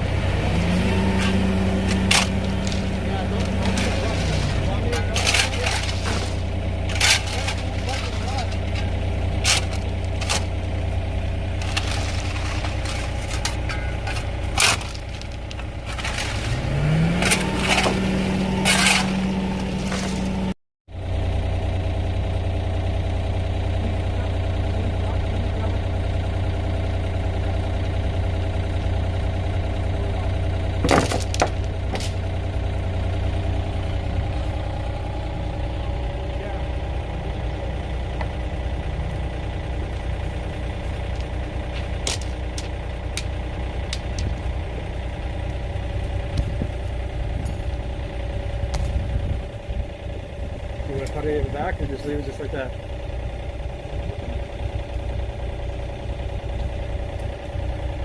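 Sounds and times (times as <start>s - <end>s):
heavy machinery engine running: 0.0s - 58.0s.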